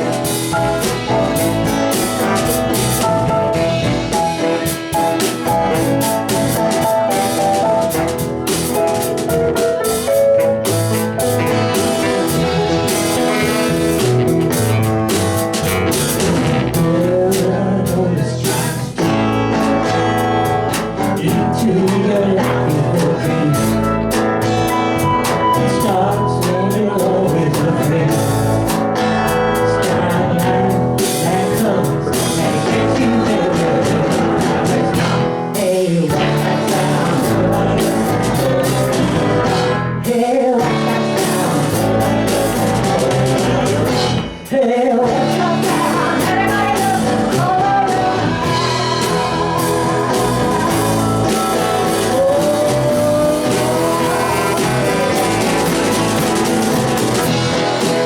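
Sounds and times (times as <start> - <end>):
live blues-rock band: 0.0 - 58.0.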